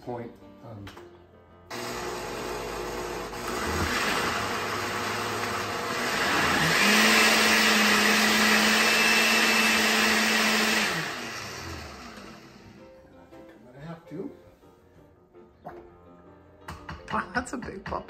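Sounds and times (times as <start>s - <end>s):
blender motor: 1.7s - 12.8s.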